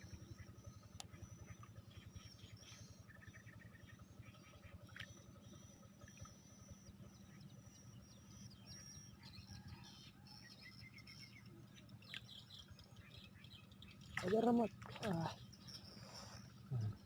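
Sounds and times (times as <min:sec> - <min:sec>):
low background hum: 0:00.0 - 0:17.0
birds chirping: 0:06.5 - 0:17.0.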